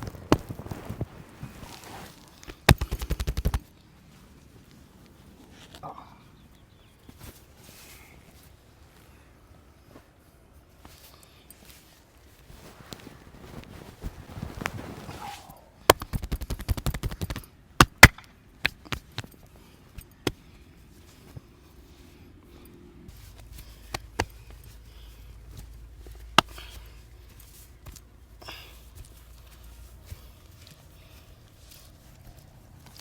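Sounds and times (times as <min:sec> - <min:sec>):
hands rubbing hair: 0:00.0 - 0:03.7, 0:11.7 - 0:17.5, 0:23.1 - 0:33.0
sharp hand slaps: 0:02.6 - 0:03.6, 0:15.9 - 0:19.3.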